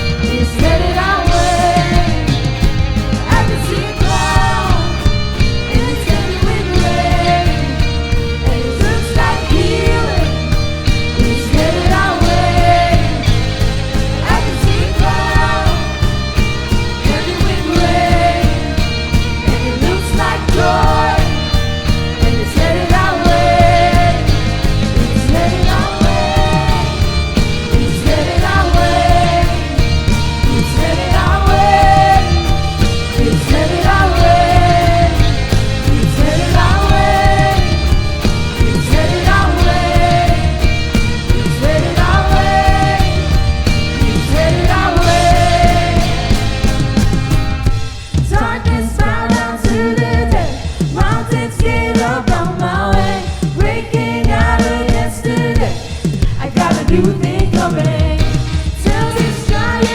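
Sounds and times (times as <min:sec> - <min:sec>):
person singing: 0:00.0 - 0:47.0
rock worship band music: 0:00.0 - 0:59.9.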